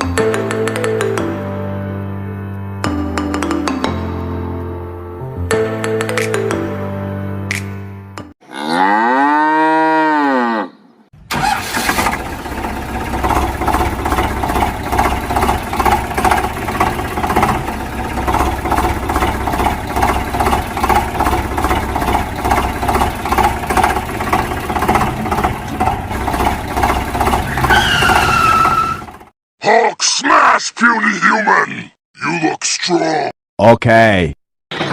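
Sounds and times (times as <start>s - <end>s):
cow mooing: 8.4s - 10.9s
engine running with fast pulsing: 11.3s - 29.3s.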